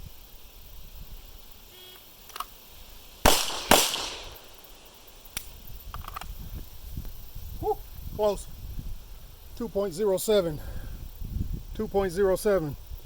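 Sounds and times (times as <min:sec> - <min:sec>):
pistol shots: 0:03.2 - 0:04.6.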